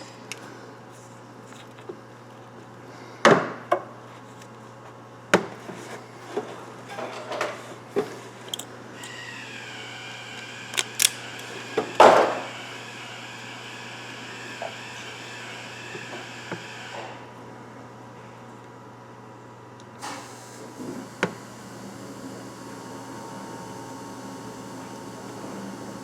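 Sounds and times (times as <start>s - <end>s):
tools clicking and knocking: 8.4s - 8.7s, 10.7s - 12.2s.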